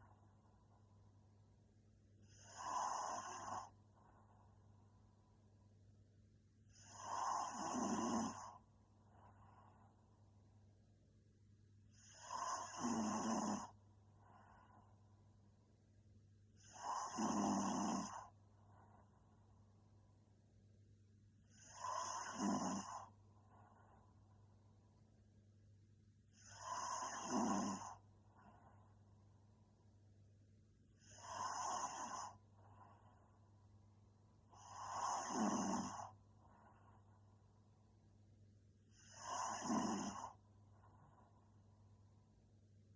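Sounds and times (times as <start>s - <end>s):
soft breathing: 2.1s - 5.7s, 6.6s - 10.6s, 13.5s - 15.5s, 18.0s - 20.1s, 21.4s - 25.2s, 26.2s - 30.0s, 30.9s - 38.1s, 38.8s - 42.9s
woman snoring: 2.2s - 4.4s, 6.7s - 8.6s, 12.0s - 14.8s, 16.6s - 18.4s, 21.4s - 23.2s, 26.3s - 28.0s, 31.0s - 33.1s, 34.5s - 36.8s, 38.9s - 41.1s.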